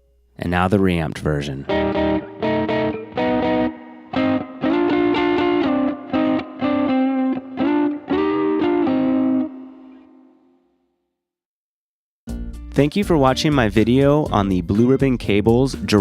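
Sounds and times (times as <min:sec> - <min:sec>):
electric guitar chord strikes: 0:01.7 - 0:10.6.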